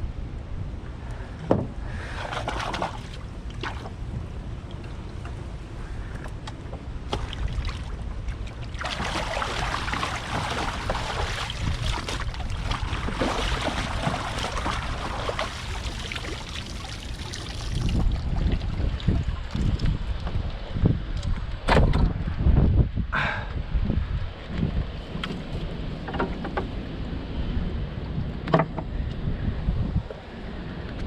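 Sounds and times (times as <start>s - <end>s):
wind rumble on microphone: 0.0s - 31.0s
water splashing and pouring: 2.0s - 4.1s, 7.1s - 20.2s.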